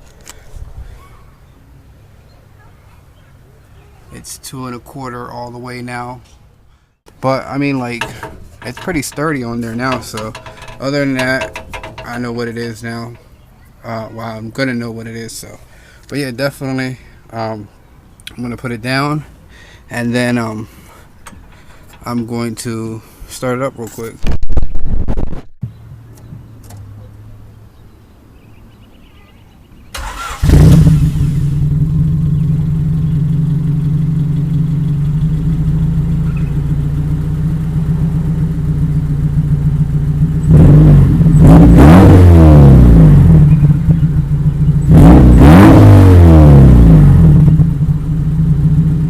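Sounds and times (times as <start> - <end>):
car engine starting and idling: 7.1 - 13.3, 29.9 - 49.0
car engine revving: 30.0 - 38.1, 40.4 - 49.0.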